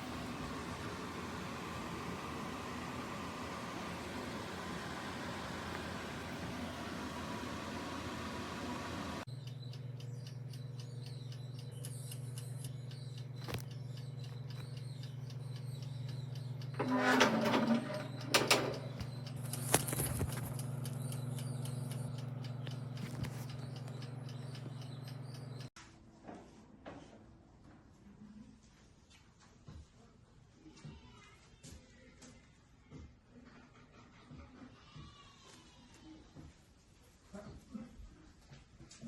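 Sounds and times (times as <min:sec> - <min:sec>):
air fryer oven humming: 0:00.0 - 0:25.7
clicks: 0:09.4 - 0:25.7.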